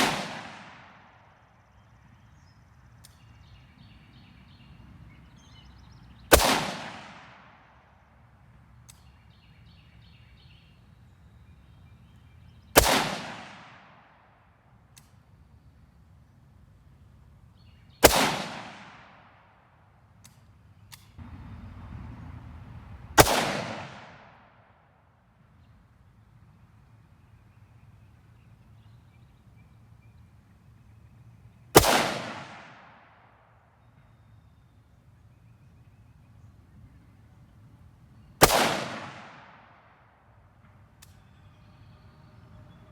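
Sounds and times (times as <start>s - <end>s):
rifle shots with echo: 0.0s - 1.3s, 6.3s - 7.9s, 12.8s - 14.4s, 18.0s - 19.6s, 23.2s - 24.8s, 31.8s - 33.6s, 38.4s - 40.8s.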